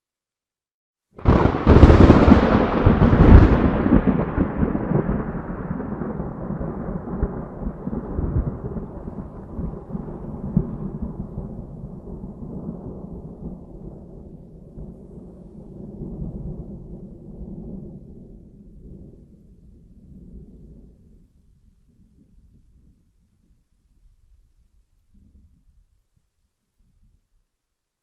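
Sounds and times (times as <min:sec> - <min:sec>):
thunderclap crack: 0:01.2 - 0:18.0
low thunder rumble: 0:01.2 - 0:24.4.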